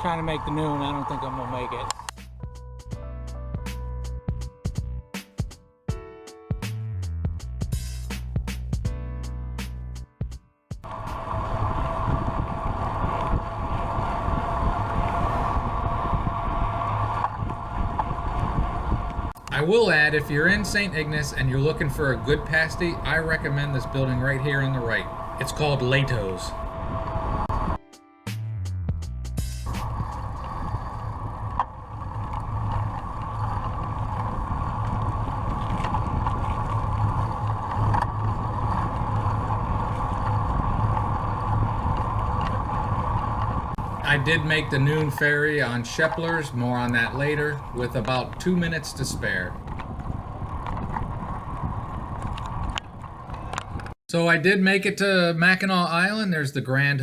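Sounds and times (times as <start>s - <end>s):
constant hum: 10.8s - 27.8s, 29.5s - 54.0s
wind buffeting microphone: 10.9s - 27.8s, 29.6s - 54.0s.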